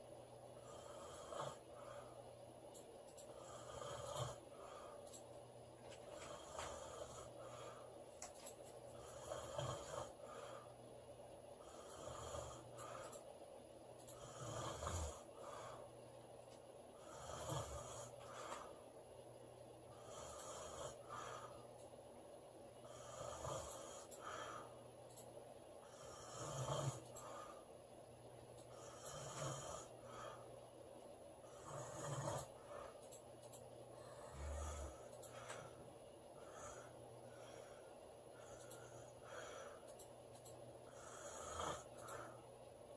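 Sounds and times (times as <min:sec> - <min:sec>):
woman snoring: 0:00.6 - 0:01.7, 0:03.4 - 0:04.8, 0:06.2 - 0:07.7, 0:09.0 - 0:10.5, 0:11.6 - 0:13.2, 0:14.2 - 0:15.8, 0:17.0 - 0:18.6, 0:19.9 - 0:21.6, 0:22.8 - 0:24.7, 0:25.8 - 0:27.5, 0:28.7 - 0:30.4, 0:31.4 - 0:32.9, 0:34.0 - 0:35.6, 0:40.8 - 0:42.3.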